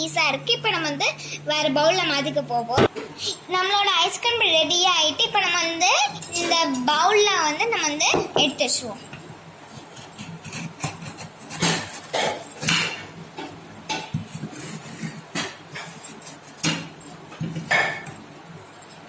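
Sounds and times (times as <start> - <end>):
spoon scraping a bowl: 9.7 - 13.0, 13.9 - 17.0.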